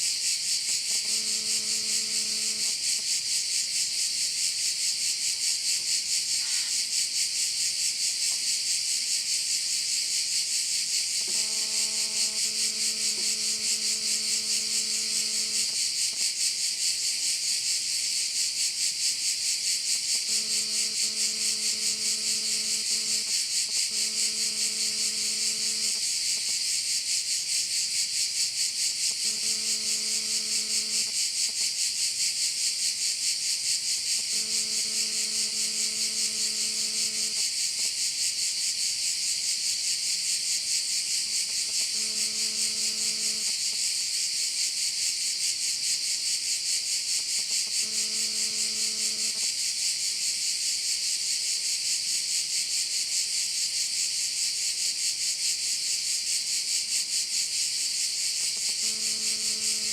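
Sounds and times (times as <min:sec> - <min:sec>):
insect chorus buzzing: 0:00.0 - 0:59.9
faint steady hum: 0:00.8 - 0:02.8, 0:11.2 - 0:15.8, 0:20.1 - 0:26.5.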